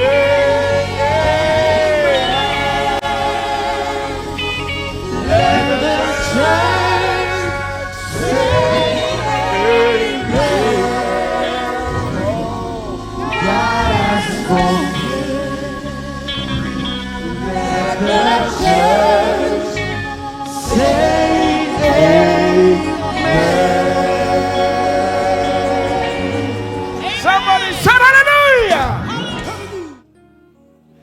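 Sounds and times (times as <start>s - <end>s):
gospel singing voices: 0.0s - 30.0s
instrumental backing with bass: 0.0s - 31.0s.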